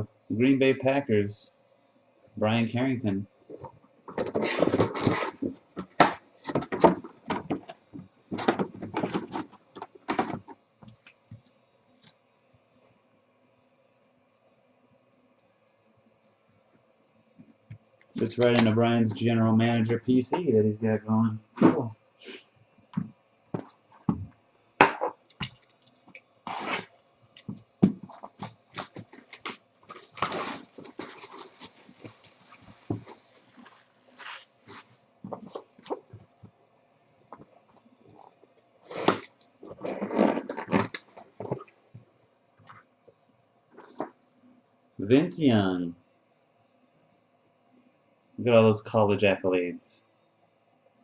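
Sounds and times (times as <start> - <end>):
cards and packaging rustling: 3.5 - 11.2, 18.1 - 19.2, 24.9 - 36.2.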